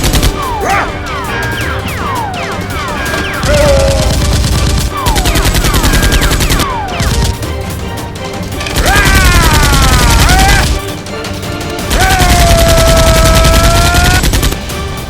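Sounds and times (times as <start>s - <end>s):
background music: 0.0s - 15.0s
automatic gunfire: 3.4s - 7.4s, 11.9s - 14.7s.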